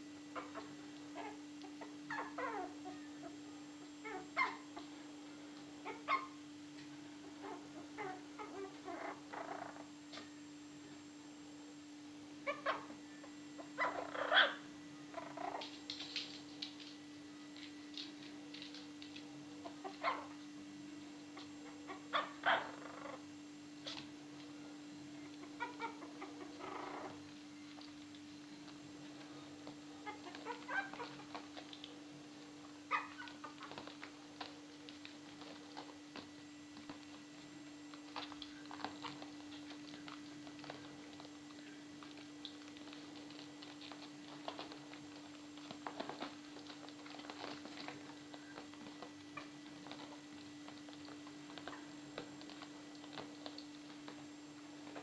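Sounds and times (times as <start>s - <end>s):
steady low hum: 0.0s - 55.0s
puppies chewing and smacking: 26.6s - 55.0s.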